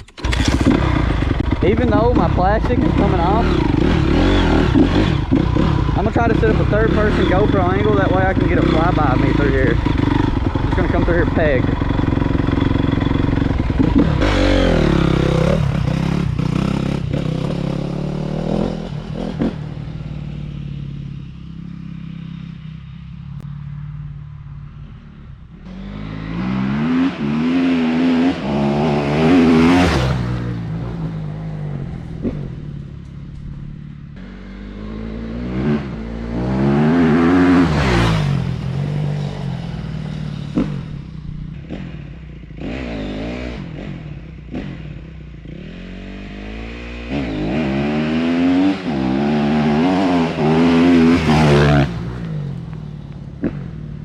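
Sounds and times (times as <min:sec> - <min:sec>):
dirt bike engine revving: 0:00.0 - 0:54.0.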